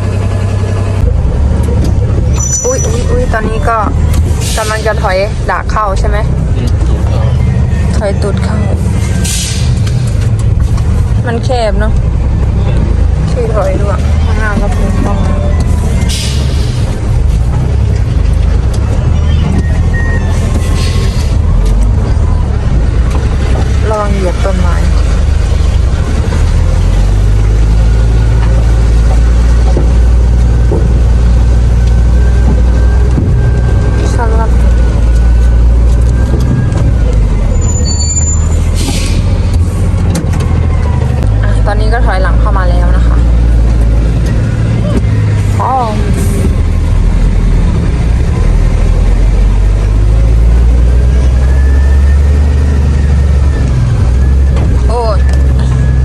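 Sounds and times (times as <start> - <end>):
diesel truck engine idling: 0.0 - 56.0.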